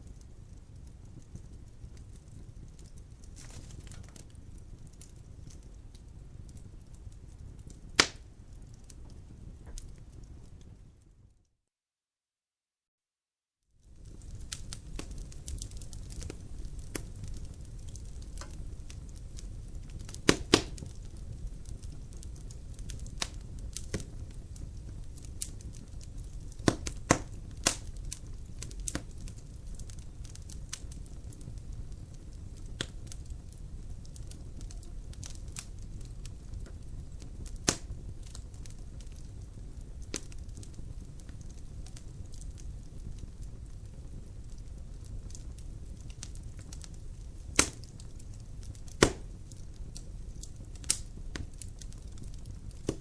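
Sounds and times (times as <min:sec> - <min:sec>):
fire pops and snaps: 0:00.0 - 0:10.8, 0:13.8 - 0:53.0
low rumble of flames: 0:00.0 - 0:11.4, 0:13.8 - 0:53.0.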